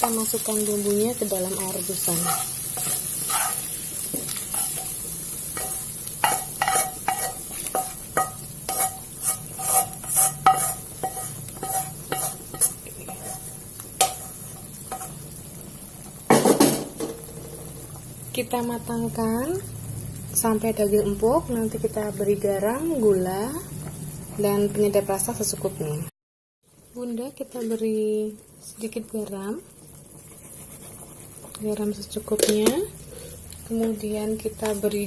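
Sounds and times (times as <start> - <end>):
faint sizzle: 0.0 - 35.0
metal spatula scraping a wok: 1.8 - 15.2.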